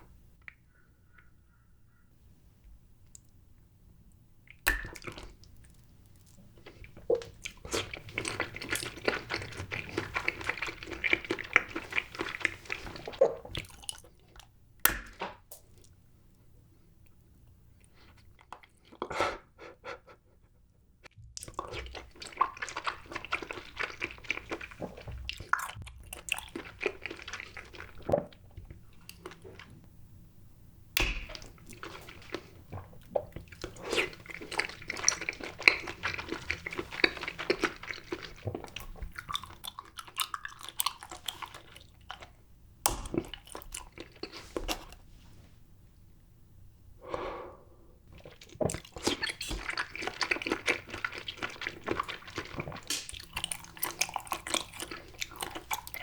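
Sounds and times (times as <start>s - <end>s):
chewing sticky jelly: 4.4s - 14.6s, 17.0s - 20.4s, 21.3s - 30.0s, 30.9s - 45.0s, 48.0s - 56.0s.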